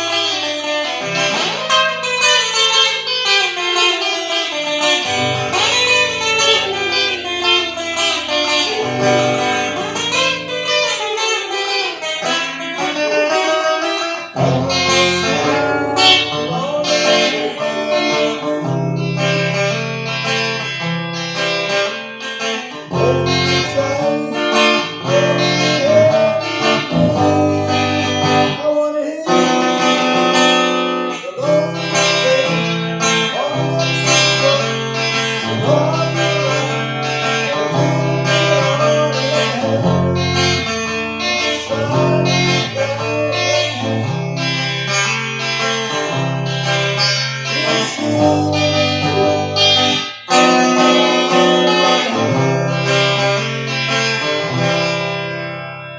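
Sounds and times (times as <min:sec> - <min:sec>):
guitar plucked and strummed: 0:00.0 - 0:55.9
bass line: 0:04.9 - 0:10.4.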